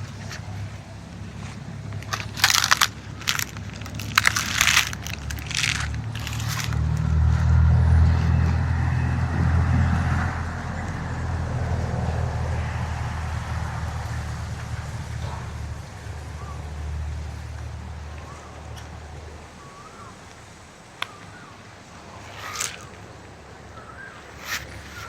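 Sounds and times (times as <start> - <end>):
steady low rumble: 0.0 - 25.0
footsteps on dry leaves: 0.1 - 8.8, 21.0 - 23.0, 24.2 - 25.0.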